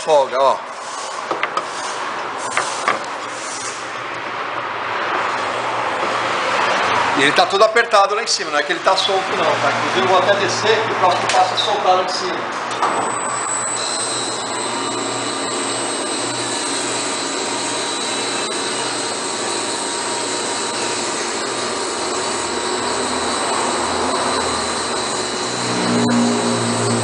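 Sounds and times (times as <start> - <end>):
vehicle lift running: 12.7 - 27.0.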